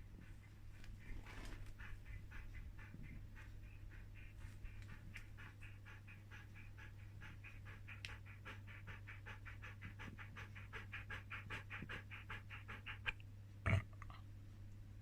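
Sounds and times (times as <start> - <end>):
dog panting: 0.0 - 13.2.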